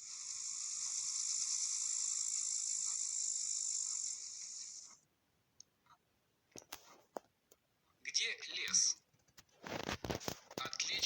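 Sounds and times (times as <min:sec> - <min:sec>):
insects chirping: 0:00.0 - 0:04.9.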